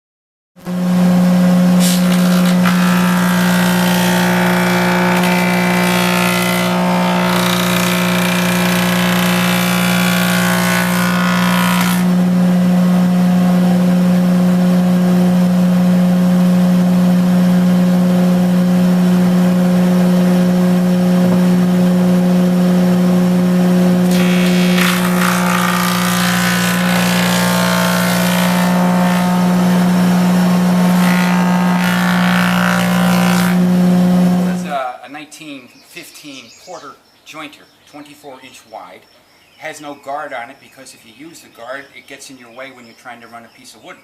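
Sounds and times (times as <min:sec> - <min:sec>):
board planing: 0:00.6 - 0:12.9, 0:23.9 - 0:34.7
jointer humming: 0:00.6 - 0:34.8.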